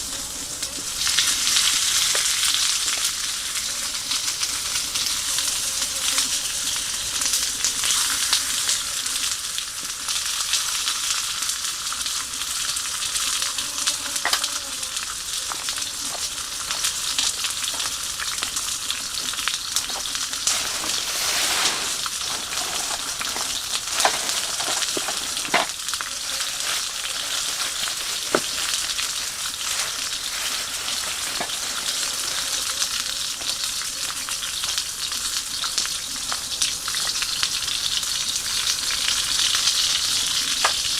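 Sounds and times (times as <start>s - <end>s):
food sizzling in a frying pan: 0.0s - 40.9s
sharp pops and ticks: 40.6s - 40.9s.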